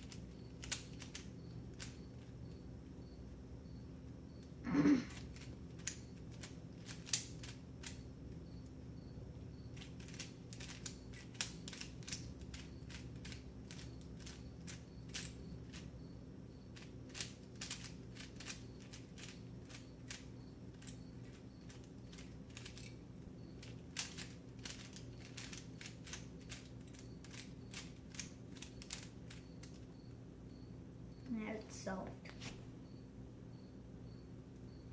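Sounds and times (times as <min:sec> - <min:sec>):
plastic cube pieces clicking: 0:00.0 - 0:02.3, 0:05.1 - 0:08.0, 0:09.7 - 0:15.9, 0:16.8 - 0:23.0, 0:23.6 - 0:29.8.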